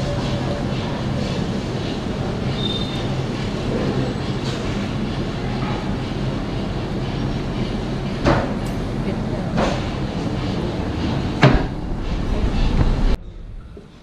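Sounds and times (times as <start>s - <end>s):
loud mechanical rumble: 0.0s - 14.0s
low hum: 8.8s - 14.0s.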